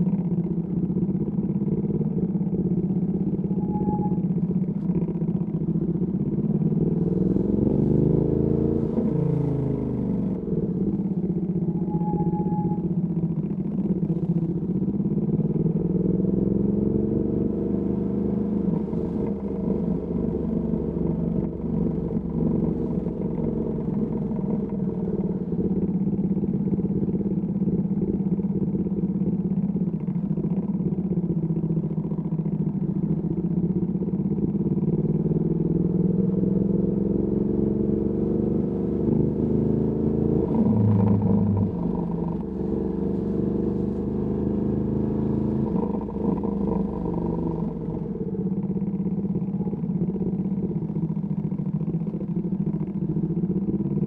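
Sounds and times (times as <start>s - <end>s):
motorcycle engine running: 0.0s - 54.0s
brief steady tone: 3.5s - 4.3s, 11.7s - 12.9s.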